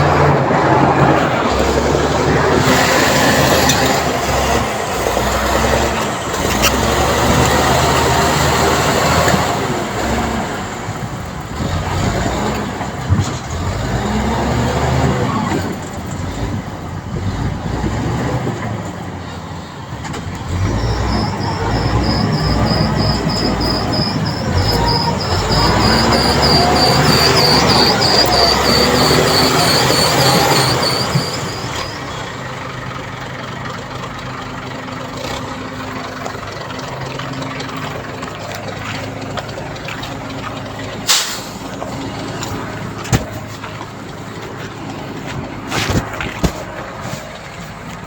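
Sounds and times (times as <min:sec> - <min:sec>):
diesel machinery engine revving: 0:00.0 - 0:48.0
high metallic squeal: 0:20.6 - 0:32.3.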